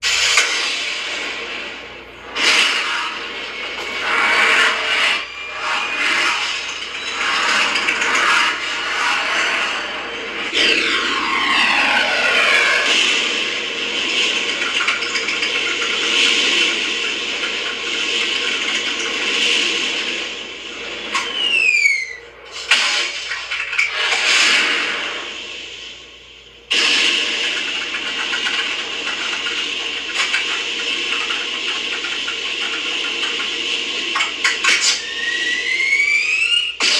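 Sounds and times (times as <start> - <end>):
toy rocket jet blast effect: 0.0 - 26.0, 26.7 - 36.9
falling whistling glide: 2.4 - 13.7, 21.1 - 22.4, 34.7 - 36.9.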